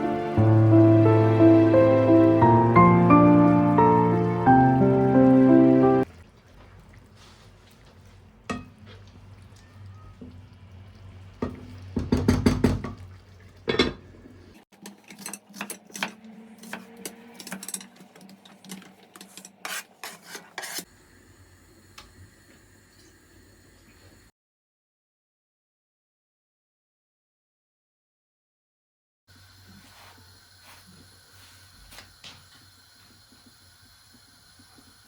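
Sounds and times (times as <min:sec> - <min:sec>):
dishes and cutlery clinking: 0:14.8 - 0:20.8.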